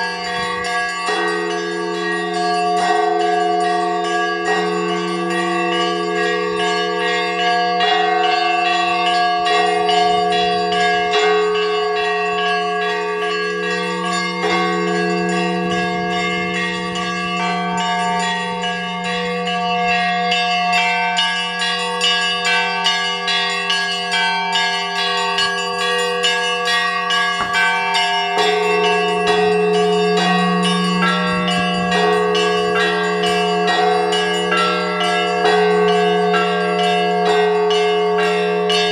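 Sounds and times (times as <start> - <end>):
large bell humming: 0.0 - 38.9
small high bells ringing: 0.0 - 38.9.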